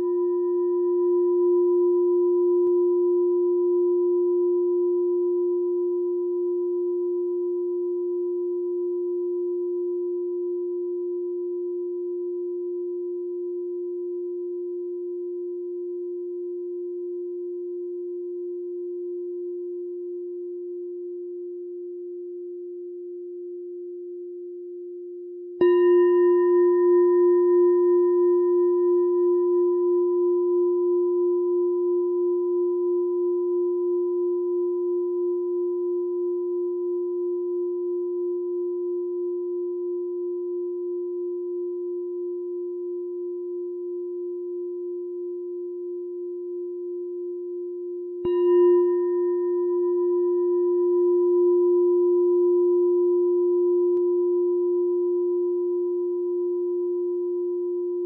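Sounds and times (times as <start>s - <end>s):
meditation bell ringing: 25.6s - 58.0s.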